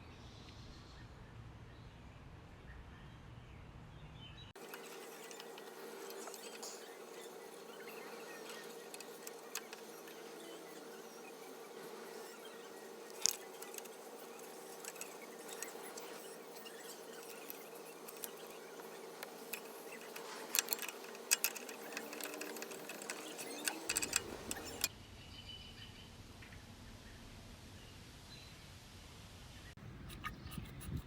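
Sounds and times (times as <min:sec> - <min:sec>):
steady hum: 0:04.6 - 0:24.9
clicks of metal parts and tools: 0:13.1 - 0:16.2, 0:17.2 - 0:24.9.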